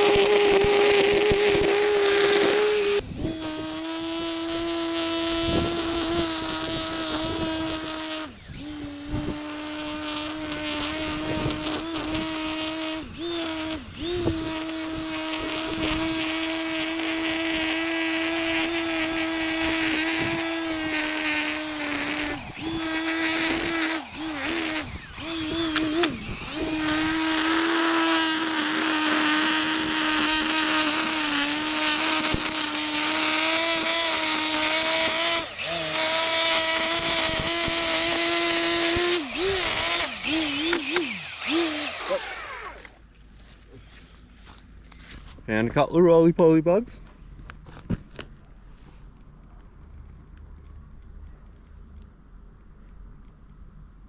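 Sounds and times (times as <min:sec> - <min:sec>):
string trimmer engine revving: 0:00.0 - 0:43.0.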